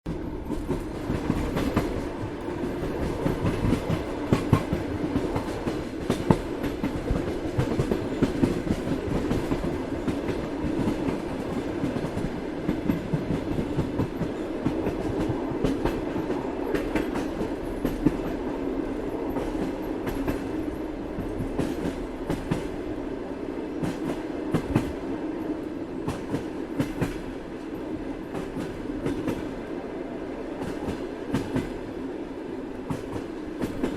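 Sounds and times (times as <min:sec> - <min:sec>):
train rolling rumble: 0:00.1 - 0:33.9.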